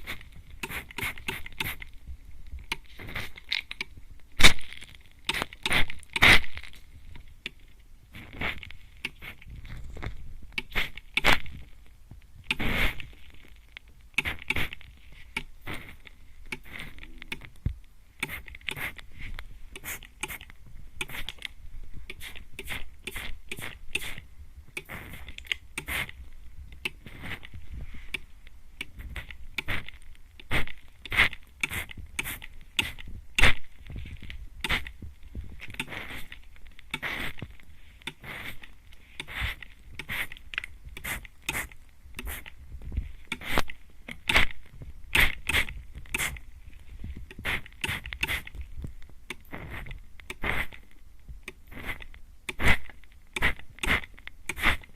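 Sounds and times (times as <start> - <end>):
spray bottle spritzing: 0.0 - 1.8, 41.0 - 42.5, 47.4 - 48.5.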